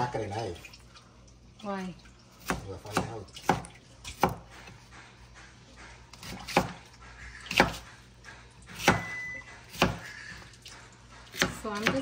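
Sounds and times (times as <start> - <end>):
knife chopping on cutting board: 2.4 - 10.5, 11.1 - 12.0.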